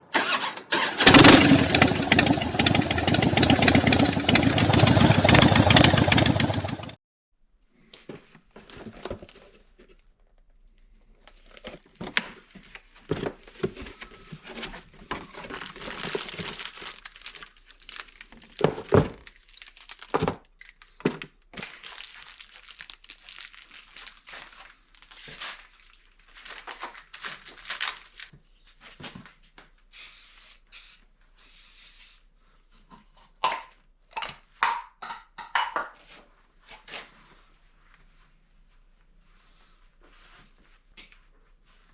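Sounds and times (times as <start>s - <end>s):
rustling: 11.0s - 29.5s
tools being handled: 18.4s - 21.8s.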